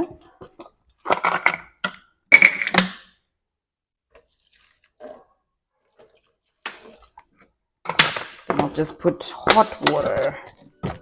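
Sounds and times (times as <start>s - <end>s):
faint handling sounds: 4.0s - 7.7s
vinegar splashing and dripping: 4.1s - 7.6s.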